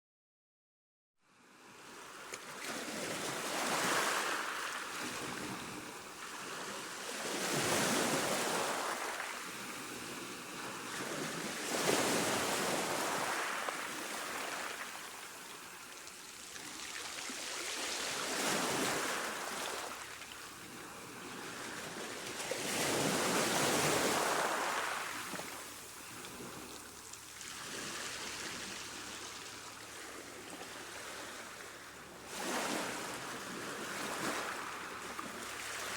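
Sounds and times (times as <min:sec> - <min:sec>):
sea waves washing onto shore: 0:02.1 - 0:35.9.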